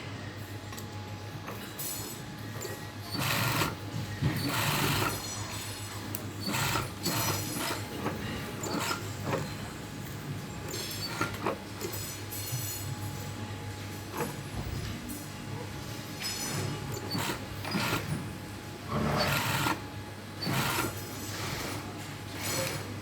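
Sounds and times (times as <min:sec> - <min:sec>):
sewing machine stitching: 0:02.6 - 0:05.2, 0:06.4 - 0:09.6, 0:10.7 - 0:12.0, 0:16.9 - 0:18.2, 0:18.9 - 0:19.8, 0:20.4 - 0:22.9.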